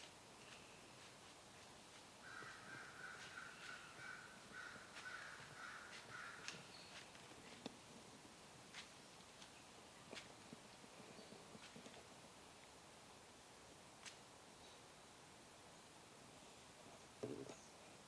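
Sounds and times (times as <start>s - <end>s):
faint repeated bird calls: 2.2s - 7.2s.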